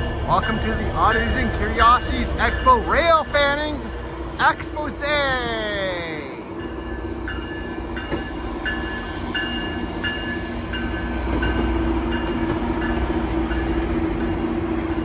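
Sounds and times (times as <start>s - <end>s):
diesel train running: 0.0s - 15.0s
bell ringing: 0.3s - 4.6s.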